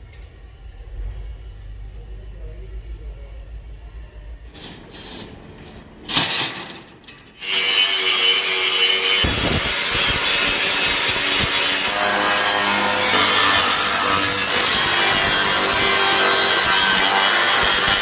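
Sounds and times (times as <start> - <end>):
power tool rasping: 7.4 - 18.0.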